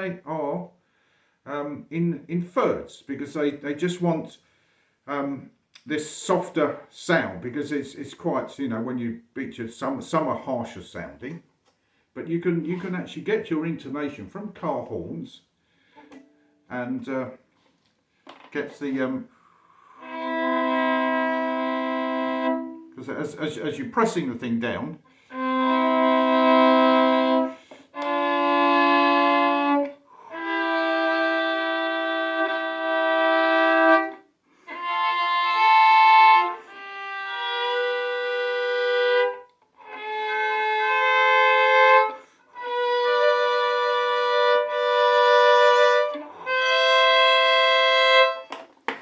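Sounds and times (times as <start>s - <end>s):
violin double stops: 25.2s - 48.7s.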